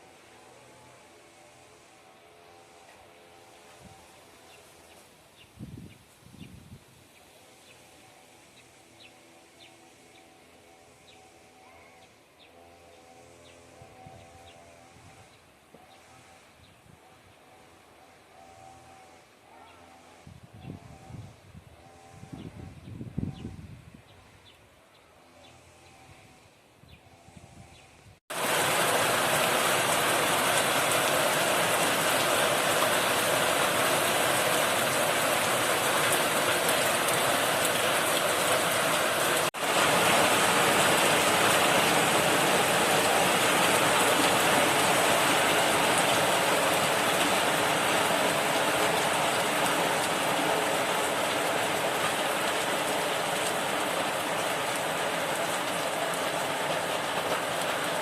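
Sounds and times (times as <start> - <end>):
heavy rain falling: 28.3 - 58.0.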